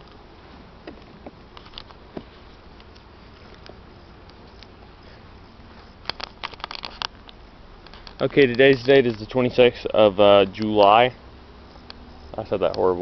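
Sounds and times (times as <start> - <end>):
cluster of clicks: 2.7 - 4.8, 6.0 - 9.3.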